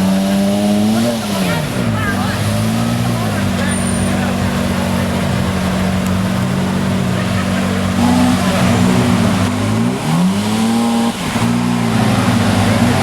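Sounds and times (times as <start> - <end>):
sports car engine revving: 0.0 - 13.0.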